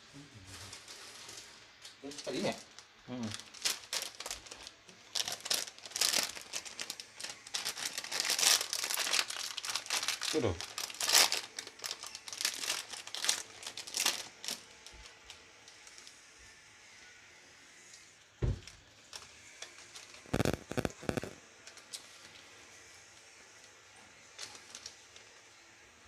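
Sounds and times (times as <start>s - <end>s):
crinkling and rustling: 0.4s - 16.2s, 18.4s - 22.0s, 24.4s - 25.0s
dull thump: 18.4s - 18.6s.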